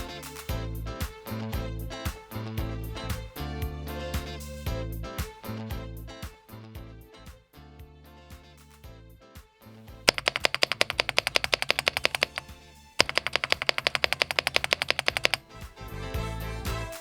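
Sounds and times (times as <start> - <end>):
background music: 0.0 - 17.0
mechanical keyboard keys clicking: 10.1 - 15.4.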